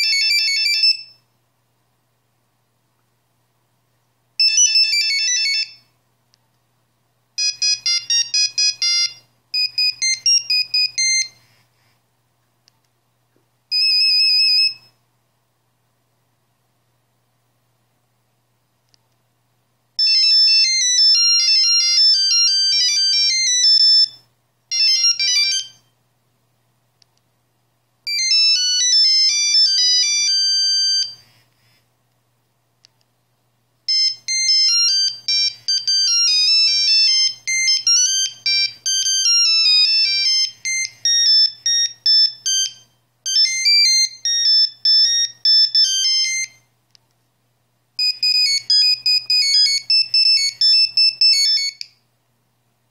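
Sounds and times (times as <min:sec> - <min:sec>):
mobile phone ringtone beeping melodies: 0:00.0 - 0:01.2, 0:04.4 - 0:05.8, 0:07.4 - 0:11.4, 0:20.0 - 0:25.9, 0:28.1 - 0:31.2, 0:33.9 - 0:46.7, 0:48.0 - 0:51.9.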